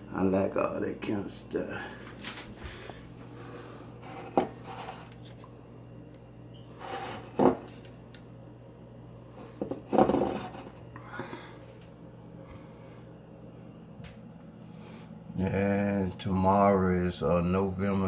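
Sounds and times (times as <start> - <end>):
steady low hum: 0.0 - 18.0
rustling and handling noises: 2.0 - 3.3.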